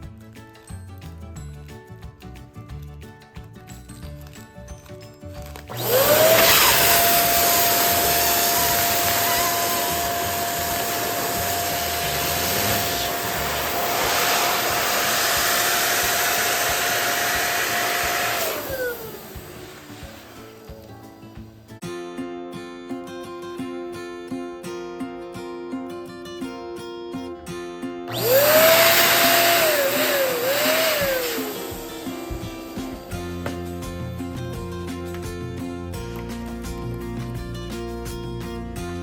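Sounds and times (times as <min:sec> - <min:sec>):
electric balloon pump running: 0:05.5 - 0:20.9, 0:28.1 - 0:33.8.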